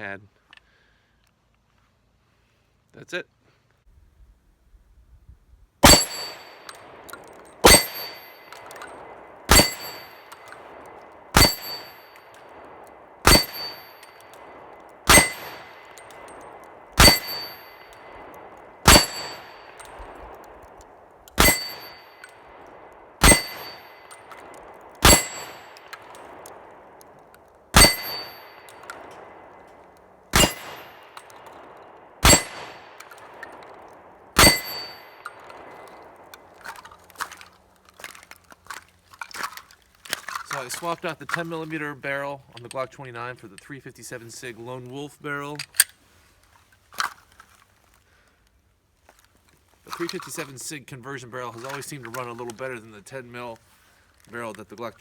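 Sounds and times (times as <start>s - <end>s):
metallic clang and ring: 5.8s - 20.2s, 21.4s - 22.5s, 23.2s - 26.3s, 27.8s - 29.7s, 30.4s - 31.6s, 32.2s - 33.7s, 34.4s - 36.0s
pistol shots: 5.8s - 37.3s.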